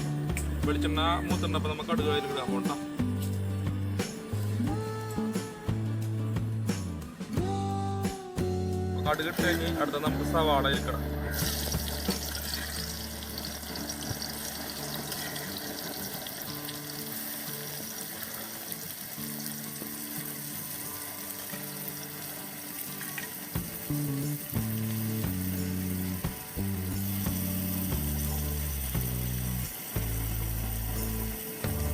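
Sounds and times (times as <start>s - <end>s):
oil sizzling in a pan: 0.0s - 7.6s, 8.3s - 31.9s.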